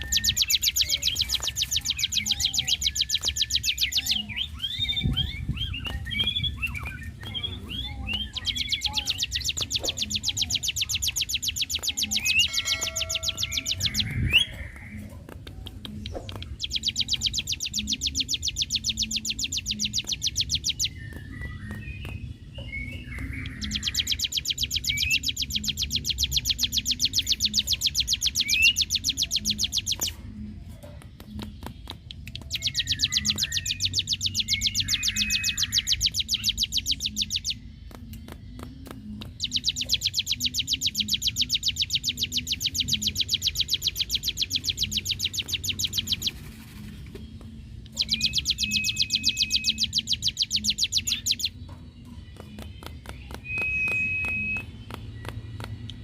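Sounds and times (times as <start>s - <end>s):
bird rattling trills: 8.6s - 15.4s.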